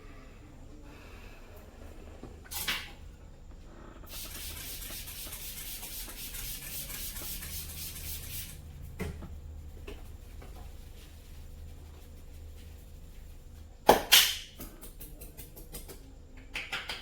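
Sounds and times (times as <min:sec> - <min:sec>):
hands rubbing hair: 0:04.1 - 0:08.9, 0:09.6 - 0:13.6.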